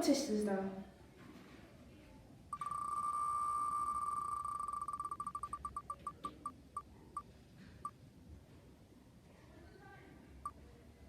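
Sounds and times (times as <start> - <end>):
electronic beep tone: 2.5 - 6.5
short electronic beeps: 2.5 - 6.9.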